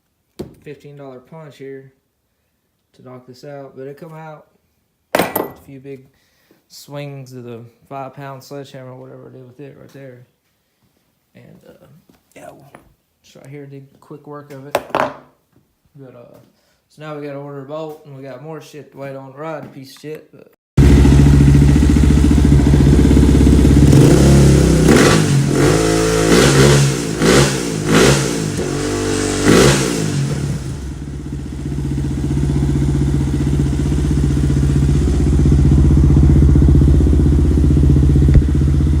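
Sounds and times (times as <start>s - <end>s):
atv engine idling and revving: 20.8s - 39.0s.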